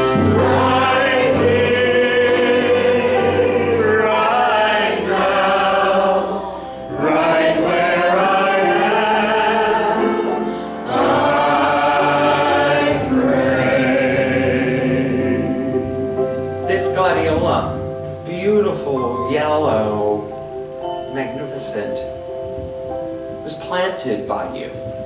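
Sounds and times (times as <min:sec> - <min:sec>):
choir singing gospel song: 0:00.0 - 0:16.3
musical accompaniment: 0:00.0 - 0:25.0.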